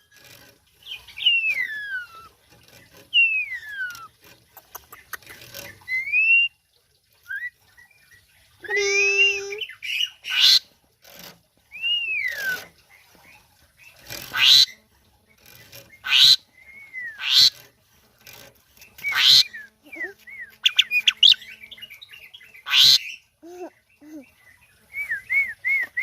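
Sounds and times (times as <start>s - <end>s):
bird whistled song: 0.8s - 2.4s, 3.1s - 4.1s, 5.8s - 6.6s, 11.7s - 12.7s, 16.0s - 17.6s, 19.0s - 23.2s, 24.6s - 26.0s
bird harsh squawks: 10.2s - 10.6s, 14.3s - 14.7s, 16.0s - 16.4s, 17.1s - 17.6s, 19.0s - 21.4s, 22.6s - 23.2s.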